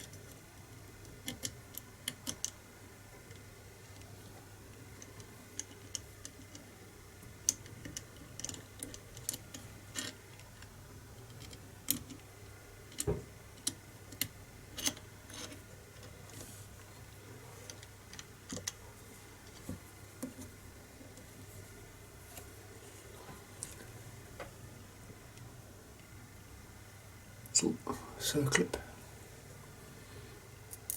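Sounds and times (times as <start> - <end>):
small clicks and taps of parts: 1.0 - 2.6, 4.8 - 12.3, 12.9 - 16.4, 17.7 - 18.8.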